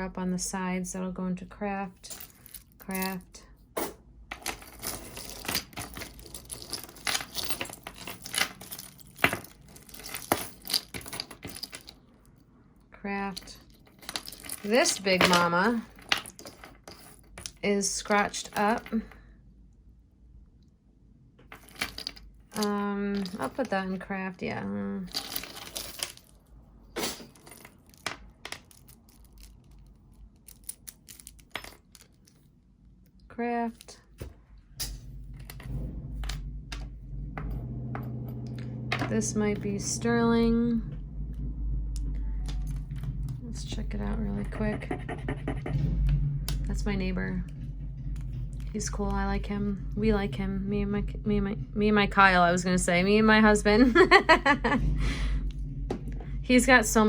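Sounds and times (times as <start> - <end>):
jewelry clinking and rattling: 1.9 - 12.2, 13.2 - 19.1, 21.4 - 32.5, 33.8 - 40.0.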